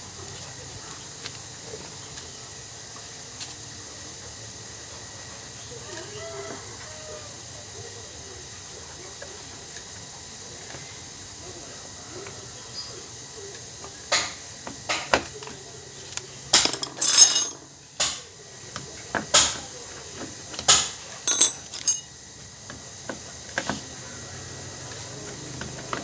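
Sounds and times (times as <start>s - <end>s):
metal tools clinking and knocking: 16.6s - 17.6s, 20.7s - 22.2s.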